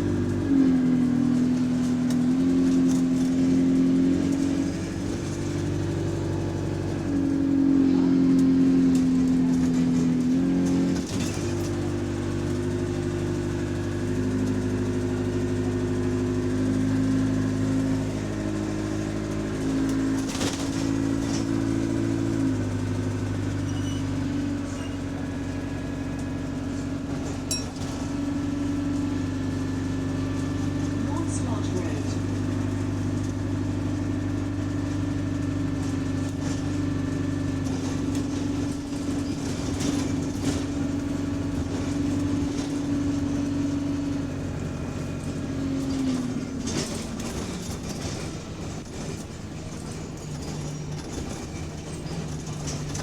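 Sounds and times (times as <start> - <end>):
diesel bus engine accelerating: 0.0 - 53.0.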